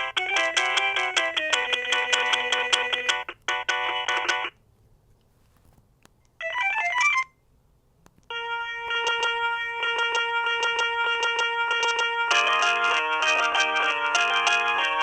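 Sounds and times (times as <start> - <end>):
polyphonic phone ringtones: 6.4 - 7.4, 8.3 - 15.0.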